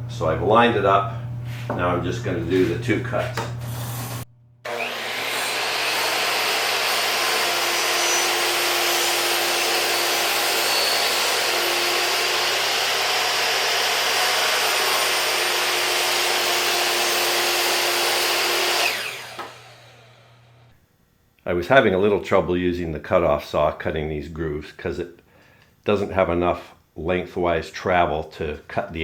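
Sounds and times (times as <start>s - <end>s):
power saw cutting wood: 3.4s - 20.6s.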